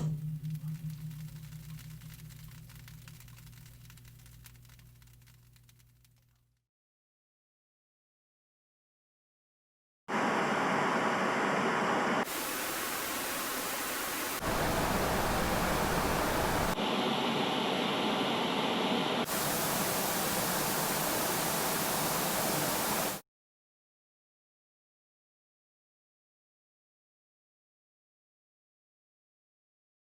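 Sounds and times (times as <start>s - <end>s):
steady hissing noise: 12.2s - 23.2s.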